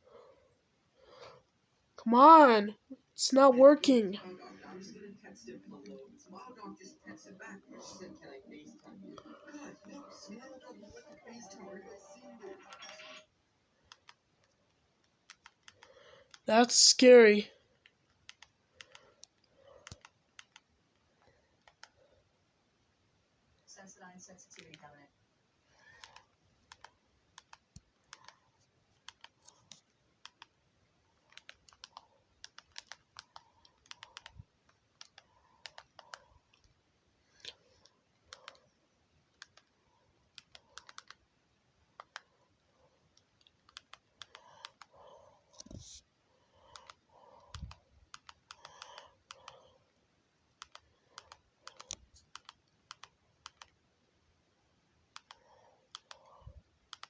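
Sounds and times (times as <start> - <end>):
typing on a keyboard: 15.3 - 16.4, 18.1 - 20.6, 31.2 - 34.4, 40.4 - 41.2, 50.6 - 53.8.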